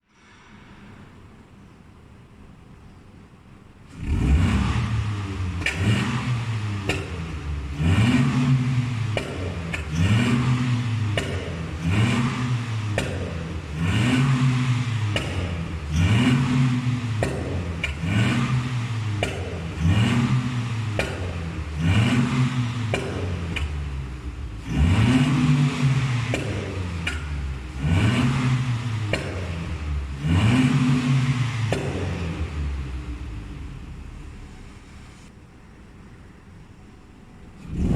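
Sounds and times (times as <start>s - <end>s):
car engine revving: 3.9s - 35.3s, 37.6s - 37.9s
exhaust pops and crackles: 9.1s - 13.4s.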